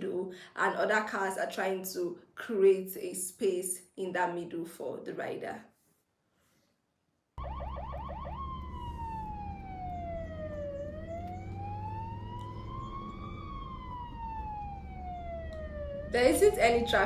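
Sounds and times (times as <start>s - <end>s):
ambulance siren: 7.4s - 17.0s.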